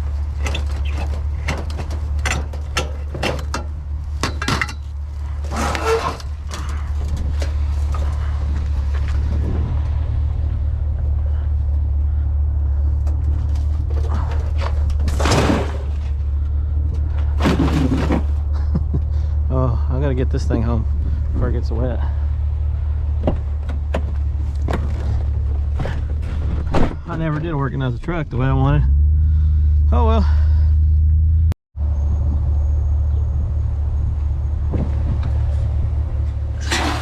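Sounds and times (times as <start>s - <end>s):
knocks and clatter: 0.0s - 10.0s, 12.7s - 18.9s, 23.1s - 27.2s
vehicle engine humming: 0.0s - 37.0s.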